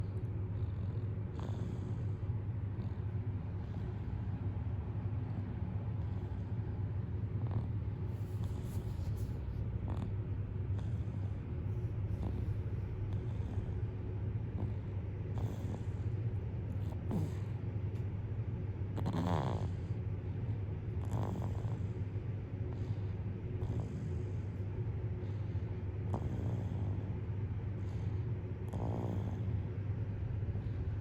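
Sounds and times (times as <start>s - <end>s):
baby snoring: 7.3s - 10.2s, 12.0s - 13.8s, 16.7s - 17.6s, 19.0s - 20.0s, 21.0s - 21.9s, 28.6s - 29.6s.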